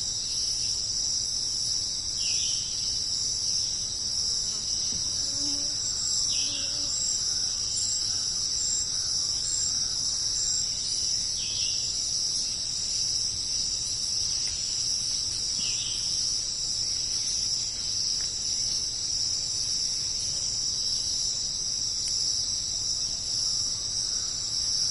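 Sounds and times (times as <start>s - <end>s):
insects trilling: 0.0s - 24.9s.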